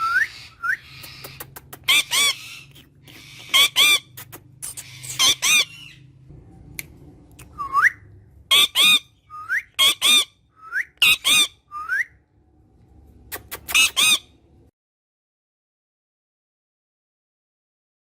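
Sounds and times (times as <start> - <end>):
parrot rising whistles: 0.0 - 1.0, 7.6 - 8.0
parrot squawking: 0.0 - 6.2, 8.5 - 10.4, 11.0 - 11.9, 13.3 - 14.4.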